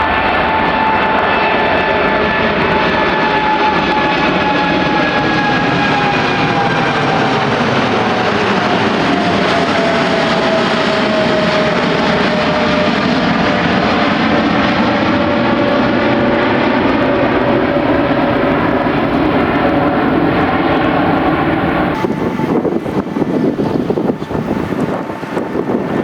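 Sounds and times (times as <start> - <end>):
jet airliner passing: 0.0 - 26.0.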